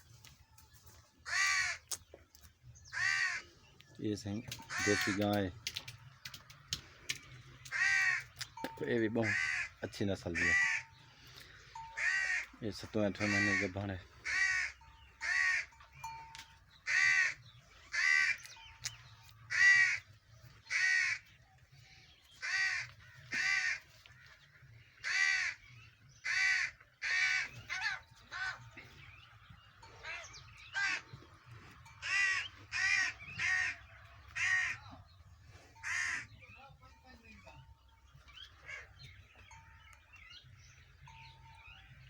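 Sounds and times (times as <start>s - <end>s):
crows cawing: 1.2s - 2.0s, 2.9s - 3.8s, 4.5s - 16.2s, 16.8s - 21.4s, 22.0s - 28.8s, 29.8s - 36.5s, 38.3s - 40.0s.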